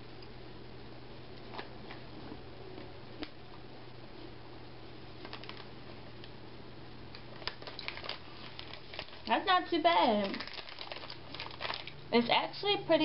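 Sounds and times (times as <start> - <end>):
low electrical hum: 0.0 - 13.0
crunchy clicks of nuts chewed: 5.2 - 5.7, 7.1 - 9.3, 10.2 - 12.0.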